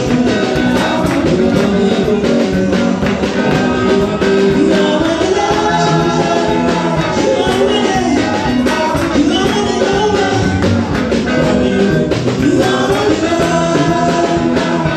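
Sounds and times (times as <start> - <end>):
band playing upbeat rhythm: 0.0 - 14.9
congregation singing along: 0.0 - 14.9.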